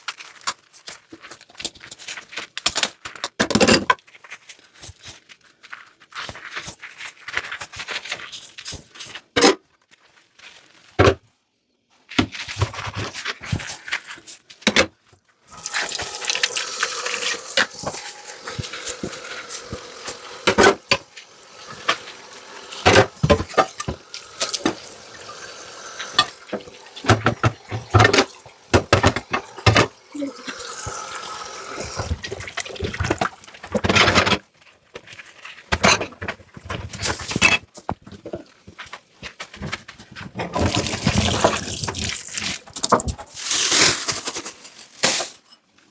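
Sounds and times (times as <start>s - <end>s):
dishes clinking in a sink: 15.5s - 34.2s
tap running water into sink: 15.5s - 34.2s, 40.6s - 43.9s.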